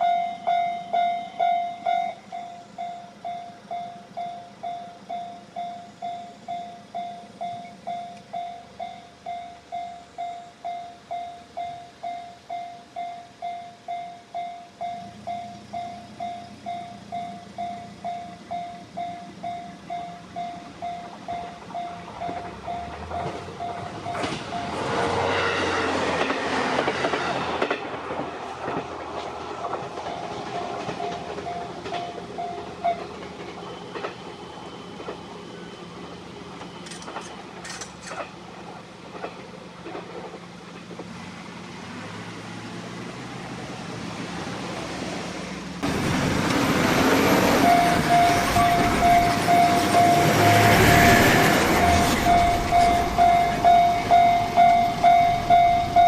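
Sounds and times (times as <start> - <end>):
level-crossing alarm bell ringing: 0.0 - 25.4, 30.0 - 37.9, 45.8 - 56.0
train wheels clacking over rails: 15.0 - 41.2, 44.5 - 56.0.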